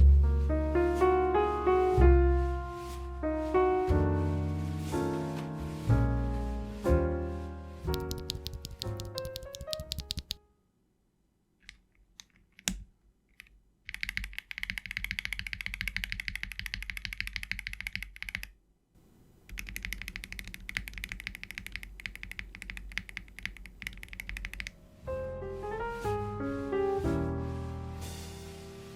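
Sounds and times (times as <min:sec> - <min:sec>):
typing on mechanical keyboard: 0:07.9 - 0:10.4, 0:13.4 - 0:18.6, 0:19.5 - 0:24.8.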